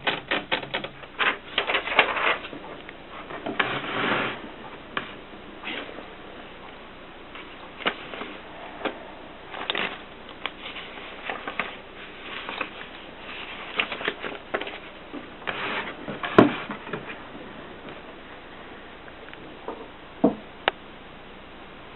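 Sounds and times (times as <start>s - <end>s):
manual typewriter typing: 0.0s - 2.5s.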